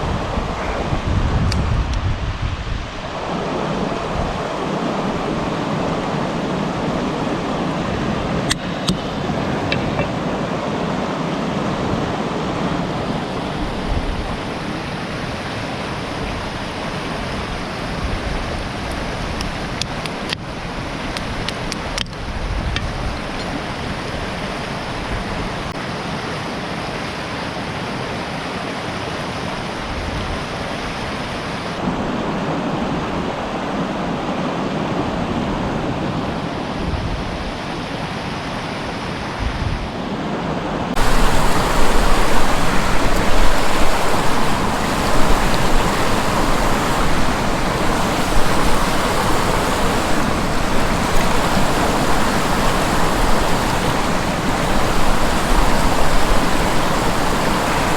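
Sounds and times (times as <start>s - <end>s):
river water rushing: 0.0s - 1.4s, 2.1s - 22.4s, 40.1s - 57.9s.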